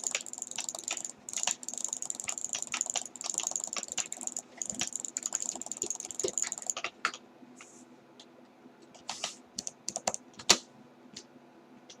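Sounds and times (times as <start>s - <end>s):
clicks: 0.0s - 7.2s.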